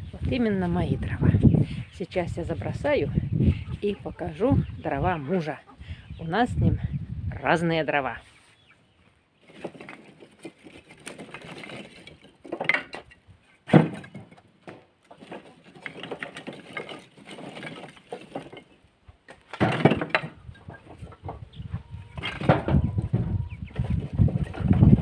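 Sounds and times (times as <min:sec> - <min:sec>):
logs clattering onto logs: 0:09.4 - 0:21.5, 0:22.1 - 0:25.0.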